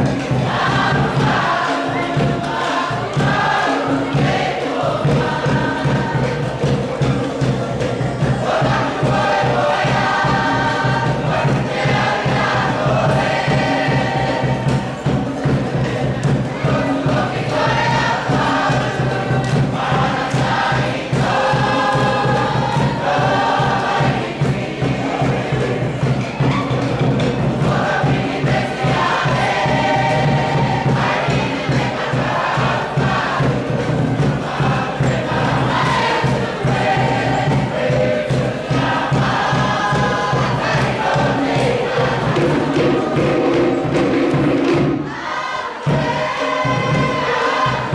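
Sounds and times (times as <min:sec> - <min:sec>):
group singing in chorus: 0:00.0 - 0:47.9
steady beat: 0:00.0 - 0:47.9.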